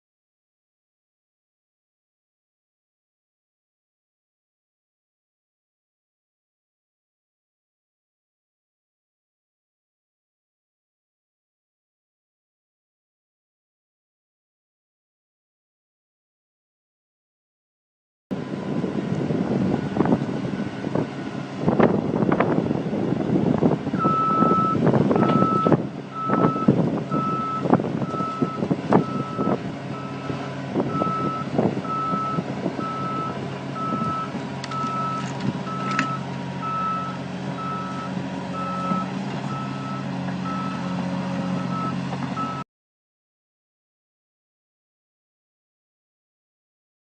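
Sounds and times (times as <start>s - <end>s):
diesel machine running: 18.3s - 42.6s
reversing alarm beeping: 24.0s - 42.6s.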